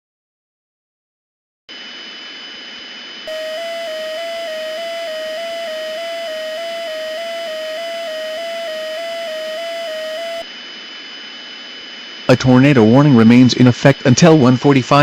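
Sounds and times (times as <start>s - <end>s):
hiss with high whistles: 3.3s - 10.4s.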